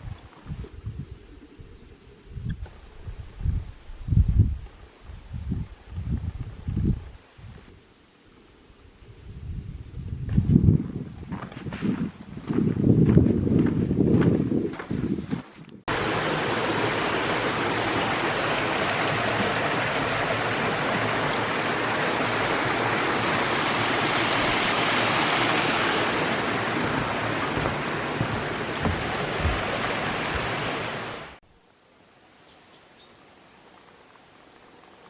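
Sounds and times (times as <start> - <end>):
wind buffeting microphone: 0.0 - 7.8, 8.9 - 31.4
stream rushing: 15.9 - 32.4.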